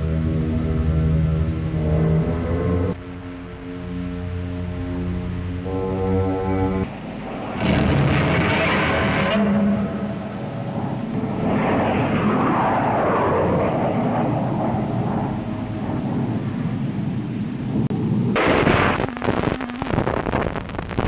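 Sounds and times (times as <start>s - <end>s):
noisy sweep falling in pitch: 0.0s - 21.0s
loud stuttering noise burst: 6.7s - 10.7s, 18.4s - 21.0s
low explosion-like rumbling: 6.7s - 21.0s.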